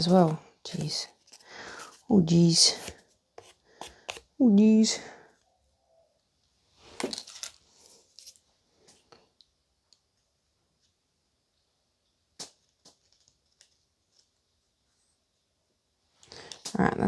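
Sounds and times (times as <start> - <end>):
plastic toys rustling and tapping: 0.0 - 2.0, 12.4 - 14.4.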